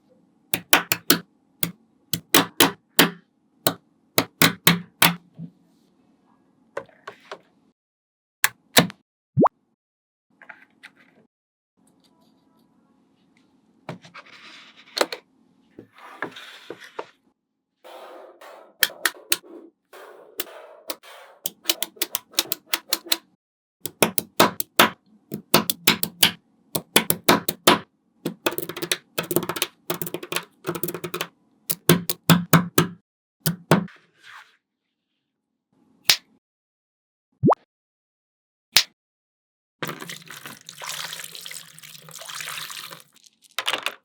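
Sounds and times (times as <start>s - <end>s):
magnetic balls clicking together: 0.6s - 1.2s, 2.2s - 3.2s, 20.4s - 23.2s, 23.9s - 33.8s.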